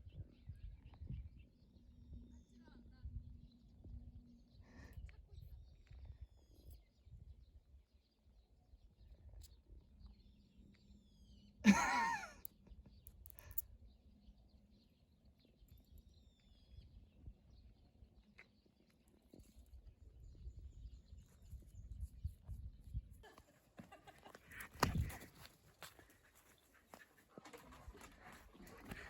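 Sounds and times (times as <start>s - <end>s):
small bird chirps: 4.9s - 7.3s, 12.4s - 23.0s.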